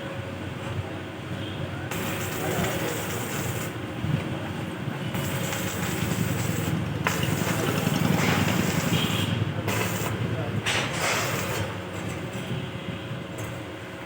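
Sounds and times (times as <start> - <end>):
vehicle running rumble: 3.8 - 12.4.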